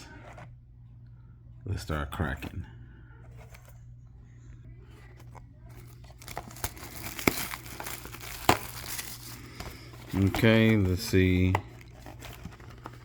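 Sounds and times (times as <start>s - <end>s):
packaging tearing and crinkling: 5.7s - 13.0s.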